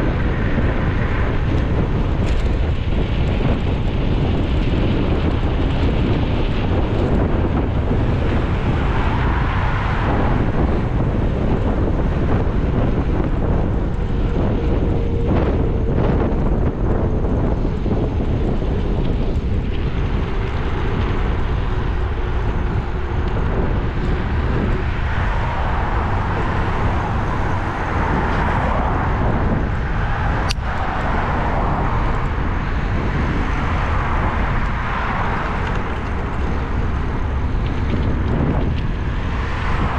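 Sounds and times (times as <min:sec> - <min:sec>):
car road noise rumble: 0:00.0 - 0:39.9.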